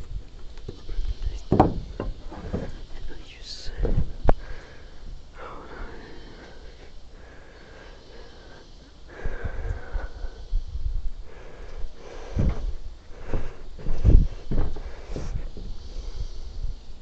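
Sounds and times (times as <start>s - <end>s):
knocks: 1.5s - 2.8s.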